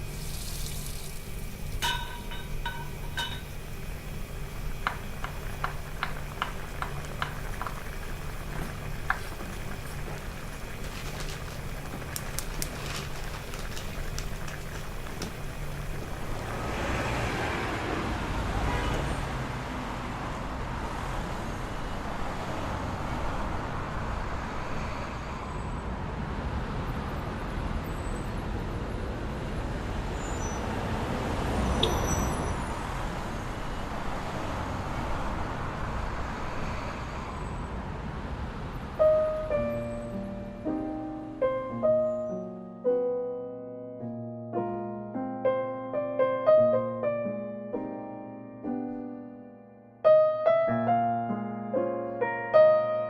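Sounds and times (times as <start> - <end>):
street traffic noise: 14.9 - 40.6.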